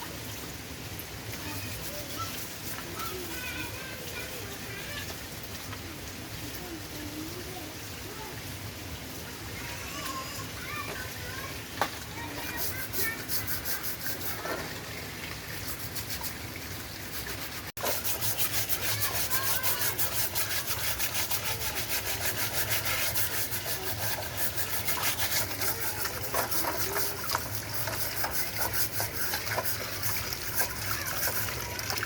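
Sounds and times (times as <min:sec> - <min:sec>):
rubbing strokes on hard surface: 0:01.3 - 0:04.8, 0:12.2 - 0:32.0.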